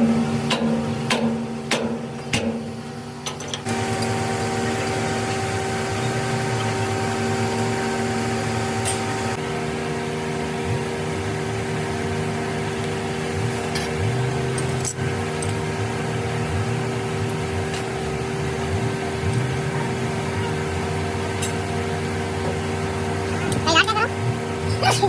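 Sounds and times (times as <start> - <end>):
sharp metallic knocks: 0.0 - 2.8.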